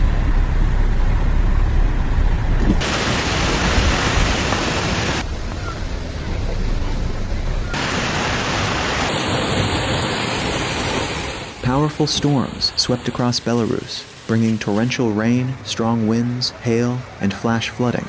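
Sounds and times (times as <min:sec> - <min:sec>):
wind: 0:00.0 - 0:18.0
heavy rain: 0:02.8 - 0:06.3, 0:07.7 - 0:15.0.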